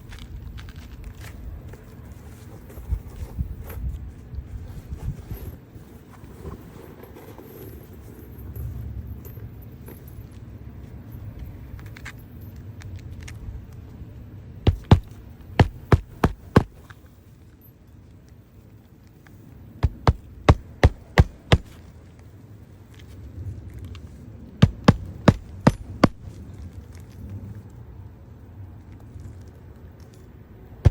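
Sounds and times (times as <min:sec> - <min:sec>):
low steady hum: 0:00.0 - 0:30.9
sharp knocks: 0:14.7 - 0:16.8, 0:19.8 - 0:21.8, 0:24.6 - 0:26.2.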